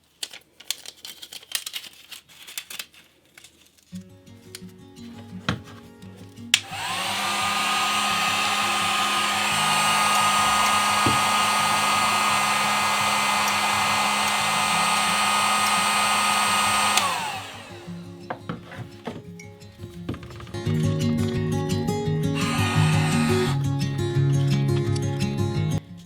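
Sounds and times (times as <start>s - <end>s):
heat gun fan whining: 6.5s - 19.2s, 22.4s - 23.7s
heat gun switch click: 6.6s - 17.9s.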